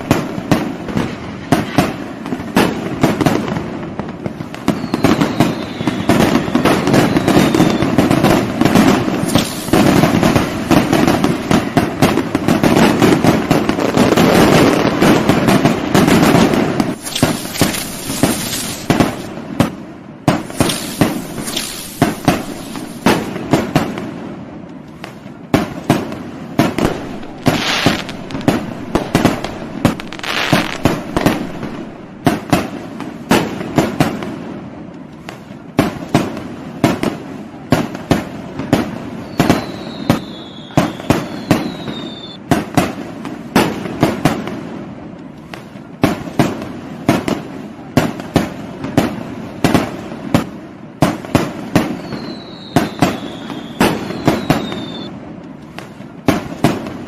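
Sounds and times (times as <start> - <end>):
fireworks bangs: 0.0 - 57.0
fireworks crackle: 0.0 - 57.0
falling whistles: 4.6 - 8.2, 39.2 - 42.4, 51.9 - 55.1.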